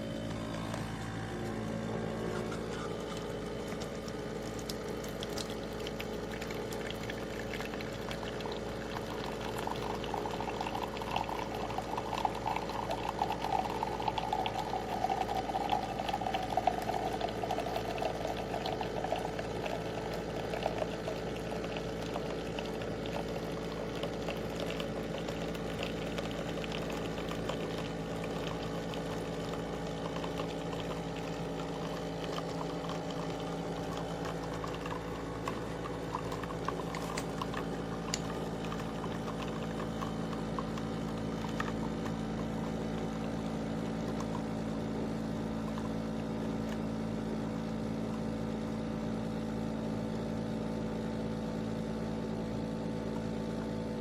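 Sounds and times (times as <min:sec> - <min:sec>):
espresso machine humming: 0:00.0 - 0:54.0
liquid bubbling and gurgling: 0:00.0 - 0:54.0.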